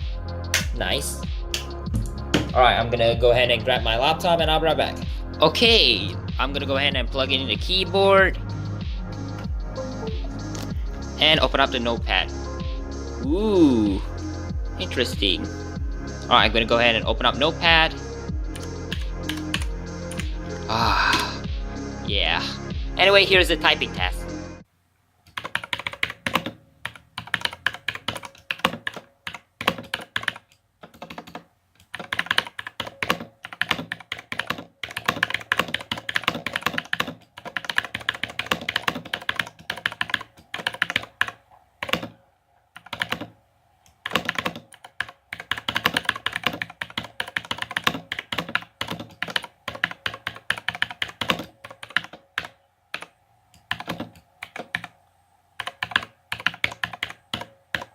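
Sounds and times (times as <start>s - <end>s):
mechanical keyboard typing clicks: 25.3s - 42.1s, 44.0s - 54.9s, 55.6s - 57.9s.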